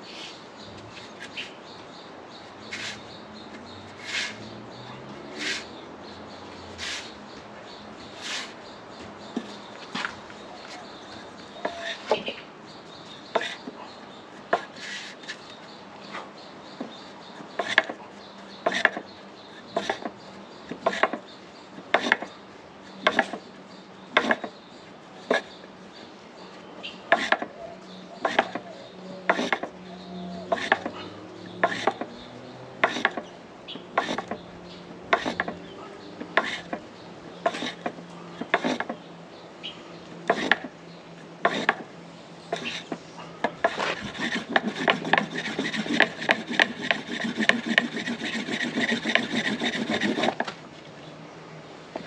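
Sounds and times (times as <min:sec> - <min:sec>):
wooden board rasping over fire roll: 0:31.6 - 0:32.2, 0:32.8 - 0:33.3, 0:34.0 - 0:34.5, 0:35.1 - 0:35.6, 0:36.3 - 0:36.8, 0:37.4 - 0:39.0, 0:40.3 - 0:40.7, 0:41.4 - 0:41.8, 0:43.6 - 0:50.5.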